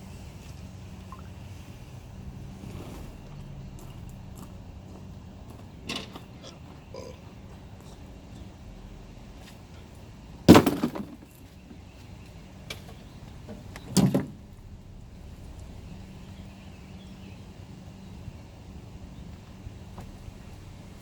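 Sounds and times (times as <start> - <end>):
short rattle: 1.0 - 6.9, 12.6 - 18.5
loud clattering impacts: 1.6 - 6.9, 10.5 - 11.3, 12.7 - 18.7.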